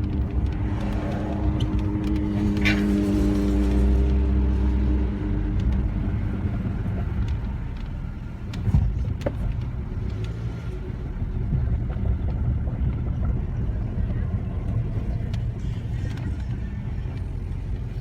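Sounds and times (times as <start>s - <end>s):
grinding noise: 0.0s - 5.2s
car running with low rumble: 0.0s - 18.0s
engine hum: 0.0s - 18.0s.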